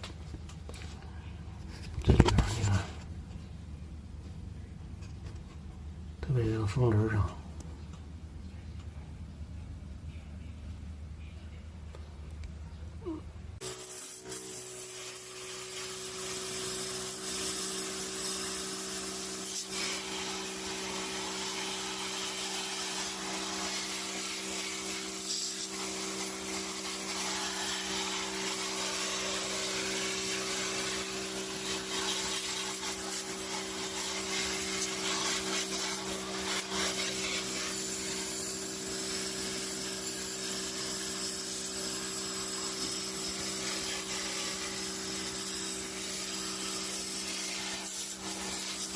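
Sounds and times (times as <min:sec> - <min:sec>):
electric pump motor humming: 0:13.6 - 0:48.9
water spray hissing: 0:13.6 - 0:48.9.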